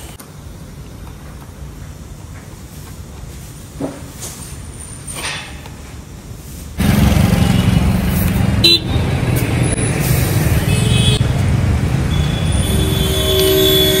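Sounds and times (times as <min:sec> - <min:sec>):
vehicle engine running: 0:06.8 - 0:13.2
steady horn-like tone: 0:12.1 - 0:14.0
short horn toot: 0:12.2 - 0:14.0.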